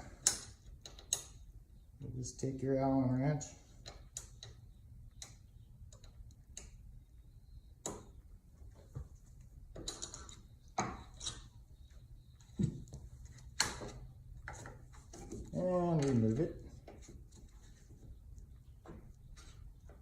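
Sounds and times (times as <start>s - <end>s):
allen wrench clicking and tapping: 0.2s - 1.4s.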